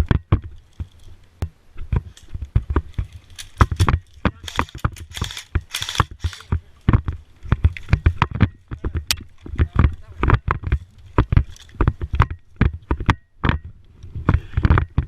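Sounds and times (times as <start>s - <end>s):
quick irregular thumps: 0.0s - 15.0s
rustling: 0.0s - 15.0s.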